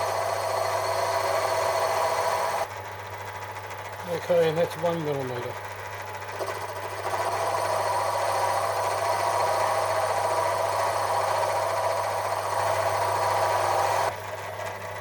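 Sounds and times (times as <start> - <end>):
rough metal cutting noise: 0.0 - 2.7, 6.4 - 14.2
lathe motor hum: 0.0 - 15.0.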